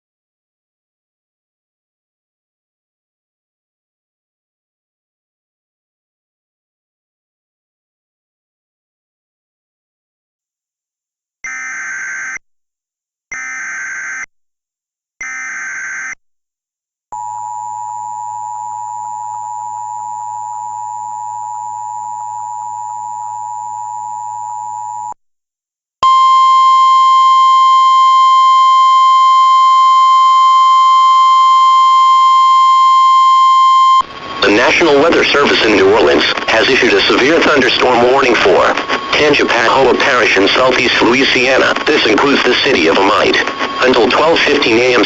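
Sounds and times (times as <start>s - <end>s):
steady warning tone: 11.4s - 12.4s, 13.3s - 14.3s, 15.2s - 16.2s, 17.2s - 25.2s, 26.0s - 45.0s
warbling data tones: 13.3s - 14.2s, 15.2s - 16.2s, 33.8s - 45.0s
two-tone attention signal: 26.0s - 34.6s.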